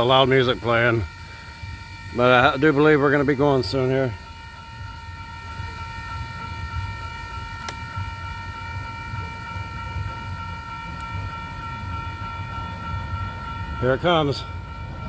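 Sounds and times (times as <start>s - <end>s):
diesel locomotive idling: 0.0s - 15.0s
high-pitched whine: 0.0s - 15.0s.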